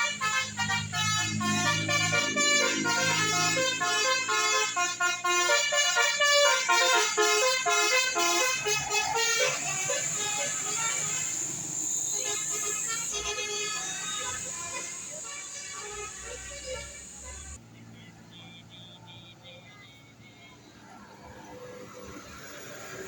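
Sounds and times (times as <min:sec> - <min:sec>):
air horns playing a melody: 0:00.0 - 0:17.6
steady road noise: 0:00.0 - 0:23.0.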